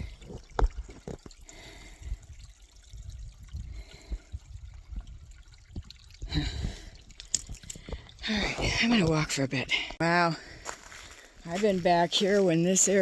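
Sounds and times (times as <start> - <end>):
water trickling and dripping: 0.0 - 9.9.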